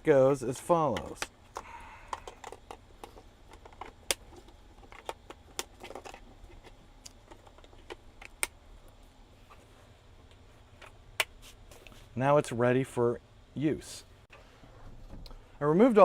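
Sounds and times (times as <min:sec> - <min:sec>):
plastic connectors clicking and rattling: 0:00.9 - 0:08.6.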